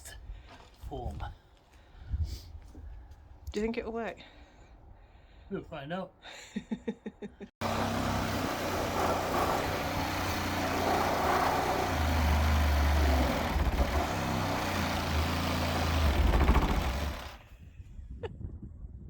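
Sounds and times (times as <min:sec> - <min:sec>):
electric saw cutting timber: 0:07.6 - 0:17.4.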